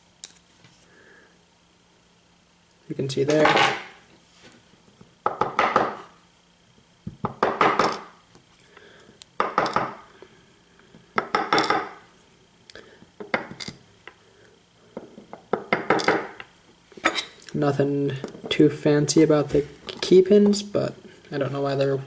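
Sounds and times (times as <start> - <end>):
small metal parts clinking: 13.5 - 13.8.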